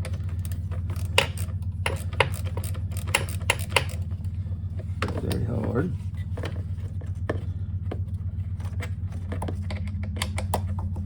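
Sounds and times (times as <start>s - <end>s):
tools and plastic parts clicking: 0.0s - 4.1s
steady low hum: 0.0s - 11.0s.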